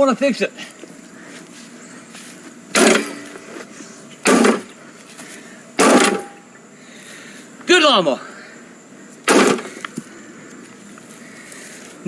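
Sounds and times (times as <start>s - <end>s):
heavy blows on a lawnmower: 2.7s - 4.8s, 5.8s - 6.5s, 9.2s - 9.9s.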